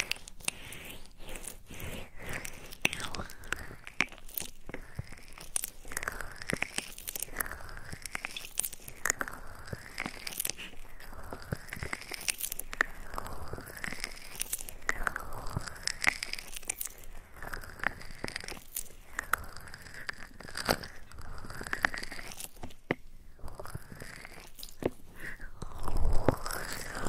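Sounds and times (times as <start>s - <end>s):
crackly rubbing on microphone: 0.0s - 27.0s.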